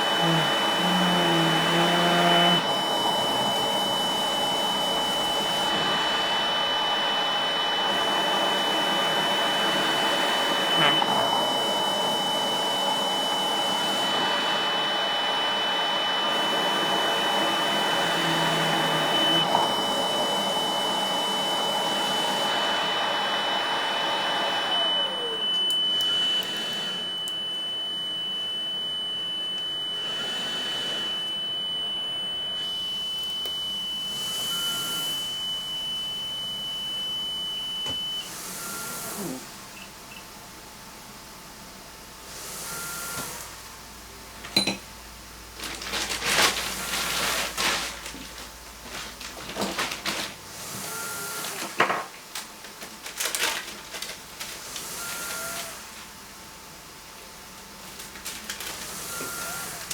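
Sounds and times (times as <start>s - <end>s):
high-pitched tone: 0.1s - 7.2s, 22.4s - 38.0s.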